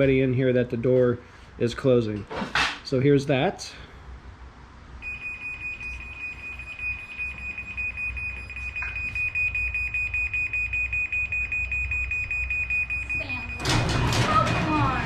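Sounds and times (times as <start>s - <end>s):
rapid high-pitched beeps: 5.0s - 13.9s.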